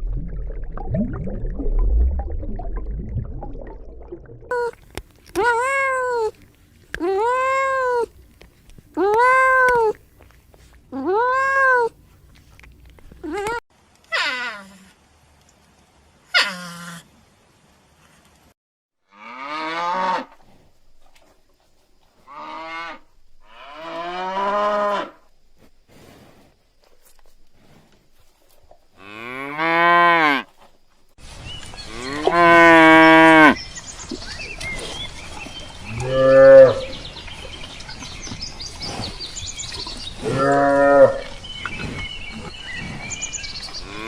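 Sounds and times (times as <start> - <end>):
background hiss: 19.2 - 37.3
cattle mooing: 35.9 - 36.9, 40.2 - 41.4.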